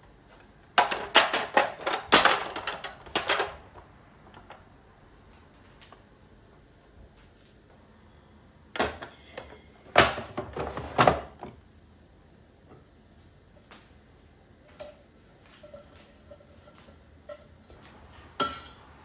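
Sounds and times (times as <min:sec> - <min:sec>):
kitchen items knocking and rattling: 0:00.3 - 0:04.6, 0:08.8 - 0:11.6, 0:14.7 - 0:19.0.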